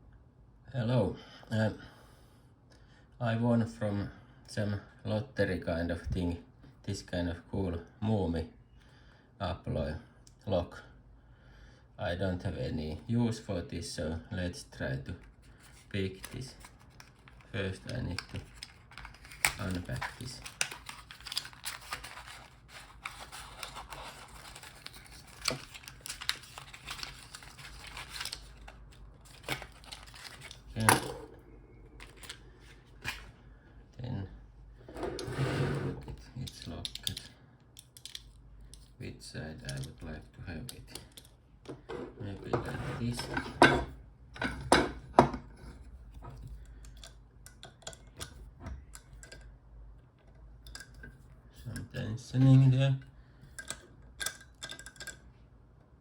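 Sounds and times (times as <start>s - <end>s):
packaging crinkling and rustling: 15.2s - 30.9s, 32.0s - 33.3s.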